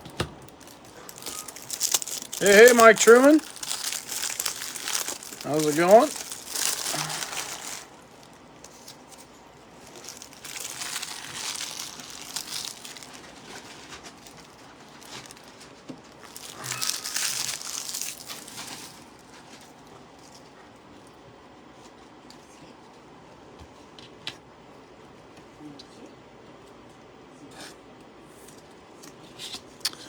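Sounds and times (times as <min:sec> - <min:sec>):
foil wrappers crinkling and tearing: 0:00.0 - 0:20.4.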